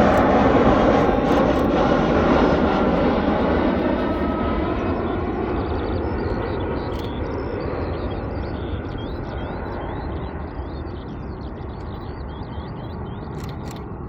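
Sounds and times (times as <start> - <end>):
jet engines roaring: 0.0 - 14.0
small birds chirping: 4.0 - 14.0.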